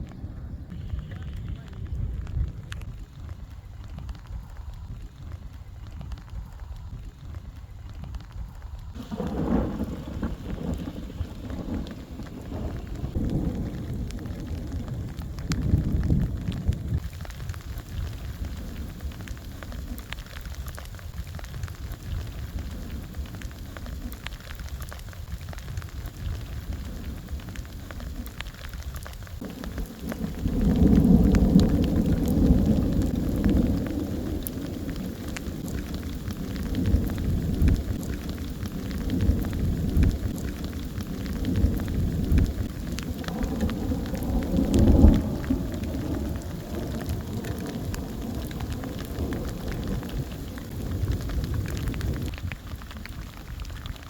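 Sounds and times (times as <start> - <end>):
rain falling: 0.0 - 54.0
thunder rumbling: 0.0 - 54.0.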